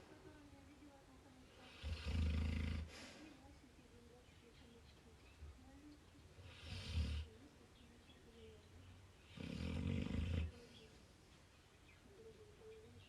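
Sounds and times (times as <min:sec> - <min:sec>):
dog snoring: 0:01.7 - 0:02.9, 0:06.4 - 0:07.3, 0:09.3 - 0:10.5.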